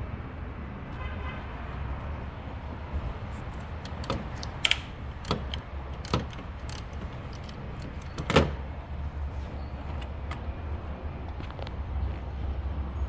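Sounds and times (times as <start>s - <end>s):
hand tools knocking and clicking: 3.5s - 8.6s.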